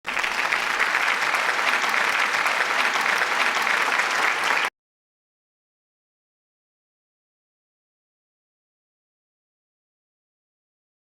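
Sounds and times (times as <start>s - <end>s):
crowd applauding: 0.0s - 4.7s.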